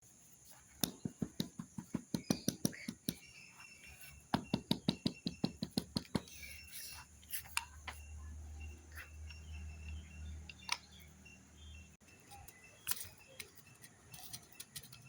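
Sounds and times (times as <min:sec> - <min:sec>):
rapid sharp taps: 0:00.7 - 0:03.3, 0:04.3 - 0:06.3.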